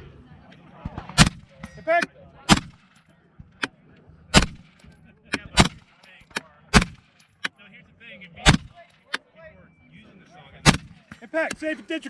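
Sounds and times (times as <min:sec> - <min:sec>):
rifle shots: 0:01.0 - 0:01.6, 0:02.5 - 0:03.0, 0:04.3 - 0:06.0, 0:06.7 - 0:07.2, 0:08.4 - 0:08.8, 0:10.6 - 0:11.1.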